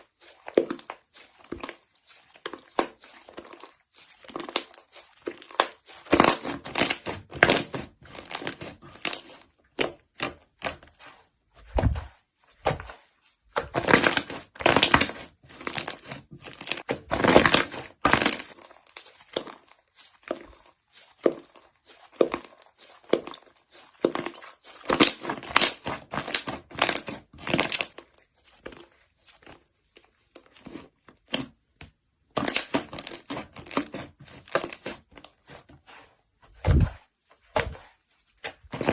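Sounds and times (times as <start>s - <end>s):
slime crackling and popping: 0.4s - 11.0s, 13.6s - 21.4s, 22.0s - 28.2s, 32.3s - 35.1s.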